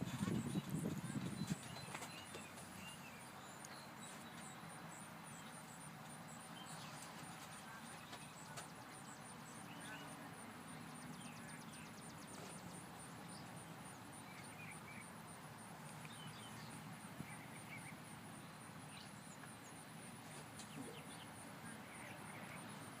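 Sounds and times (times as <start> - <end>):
faint bird chirps: 20.6 - 22.9.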